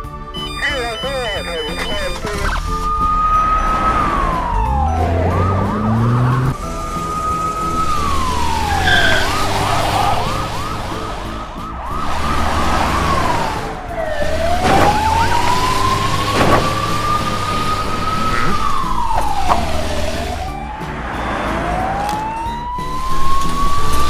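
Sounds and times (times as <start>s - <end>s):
police siren wailing: 0.0s - 24.0s.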